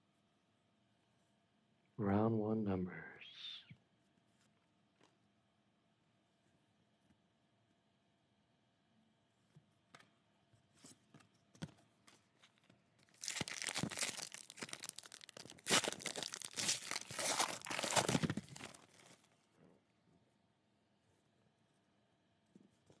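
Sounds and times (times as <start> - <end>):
wrapper tearing and crinkling: 13.0 - 19.2.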